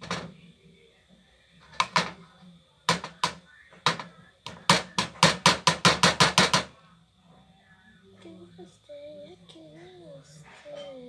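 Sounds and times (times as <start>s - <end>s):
hard object tapping: 1.7s - 2.2s, 2.9s - 6.7s.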